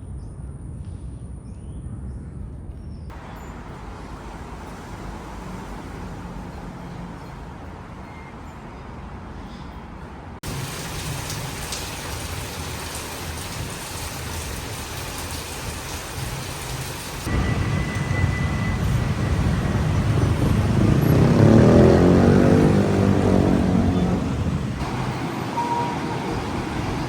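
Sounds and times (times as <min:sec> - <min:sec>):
road traffic: 0:03.1 - 0:27.0
heavy rain pouring: 0:10.4 - 0:27.0
vehicle passing close: 0:17.2 - 0:27.0.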